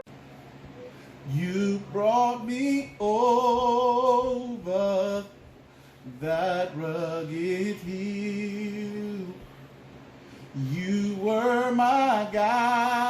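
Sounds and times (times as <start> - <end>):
person singing a hymn: 6.1 - 9.4, 10.6 - 13.0.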